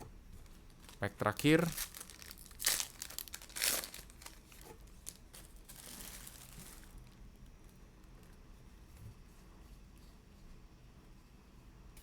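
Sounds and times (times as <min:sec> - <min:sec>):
foil wrapper tearing and crinkling: 0:00.7 - 0:07.2.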